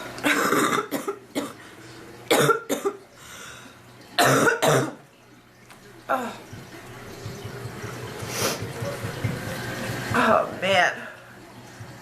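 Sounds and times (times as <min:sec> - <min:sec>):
woman coughing hard: 0:00.2 - 0:01.6, 0:02.3 - 0:03.0, 0:04.2 - 0:05.0.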